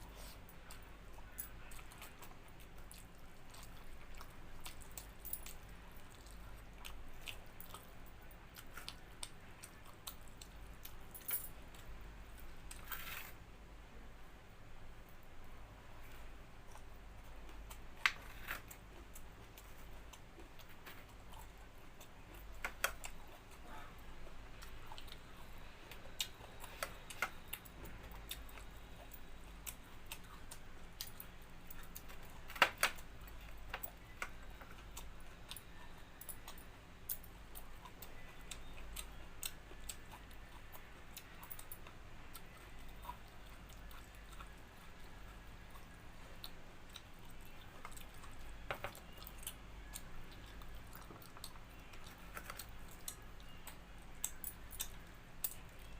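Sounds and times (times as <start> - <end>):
person chewing: 0.1 - 11.1, 33.2 - 55.9.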